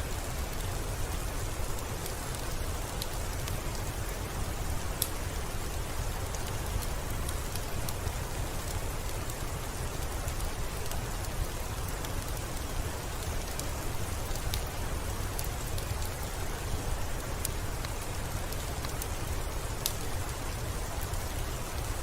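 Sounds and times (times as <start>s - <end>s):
steady rain hiss: 0.0s - 22.0s
raindrop ticks: 2.0s - 3.9s, 5.0s - 5.2s.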